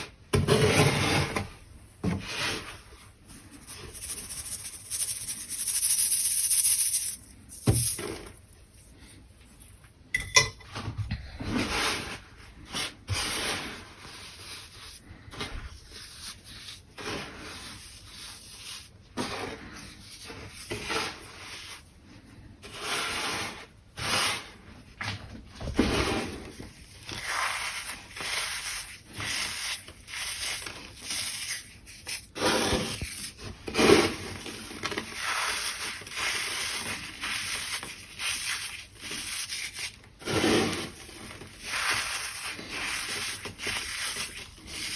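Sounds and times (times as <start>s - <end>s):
gritty rubbing and crunching: 25.6s - 44.9s.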